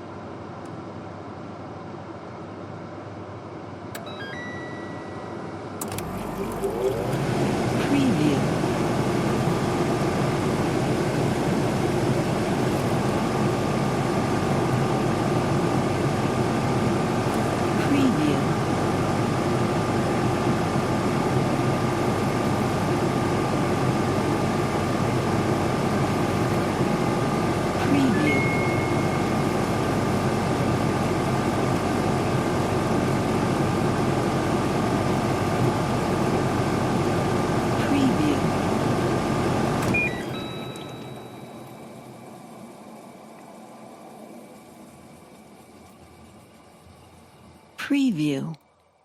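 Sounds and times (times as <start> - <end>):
air conditioner whirring: 0.0 - 49.0
thin high tone: 4.0 - 7.2, 27.8 - 30.0.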